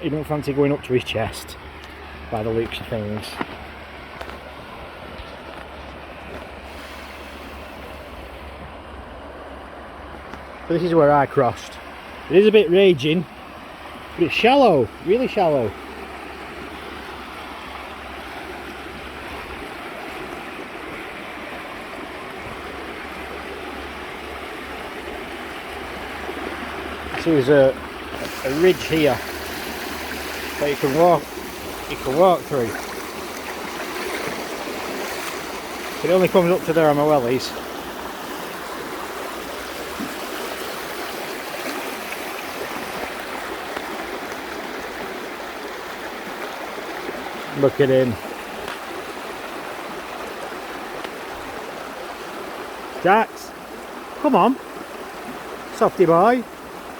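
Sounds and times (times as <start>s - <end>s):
river rushing over rocks: 15.3s - 53.2s.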